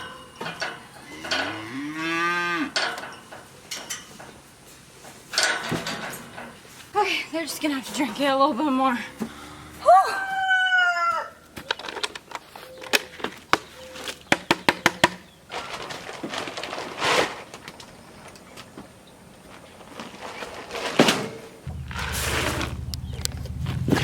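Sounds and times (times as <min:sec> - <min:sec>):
steady low hum: 0:21.6 - 0:24.0
sharp clicks and knocks: 0:21.7 - 0:24.0.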